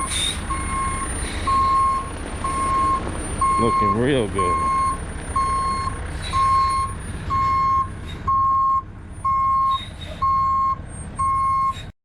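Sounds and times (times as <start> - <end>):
reversing alarm beeping: 0.0 - 11.8
truck engine running low: 0.0 - 11.9.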